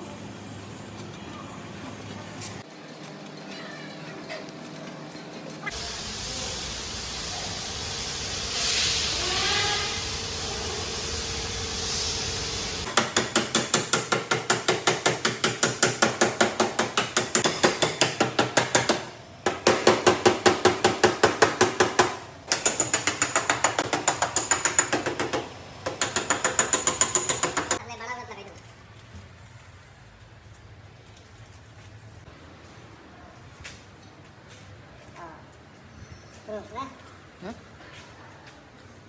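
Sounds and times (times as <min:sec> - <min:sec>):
steady hiss-like noise: 0:05.8 - 0:12.9
hammer beating sheet metal: 0:12.9 - 0:27.8.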